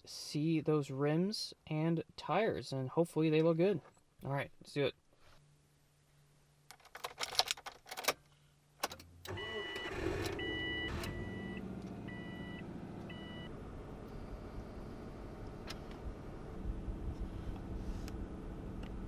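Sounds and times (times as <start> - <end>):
car engine starting and idling: 8.8 - 19.0.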